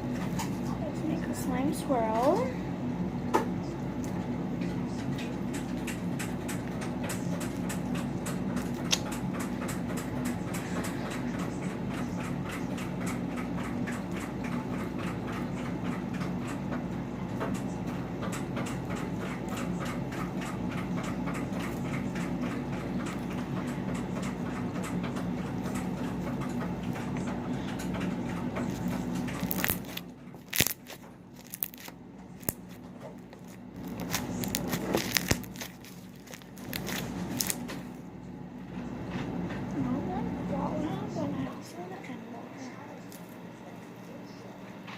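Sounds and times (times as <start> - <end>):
steady low hum: 0.0 - 44.9
slime clicking and crackling: 28.6 - 37.9.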